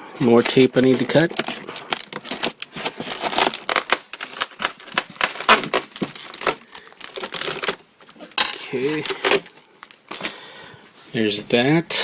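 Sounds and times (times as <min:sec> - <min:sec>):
plastic packaging crinkling: 0:00.0 - 0:10.5
packing tape being cut: 0:00.3 - 0:07.8.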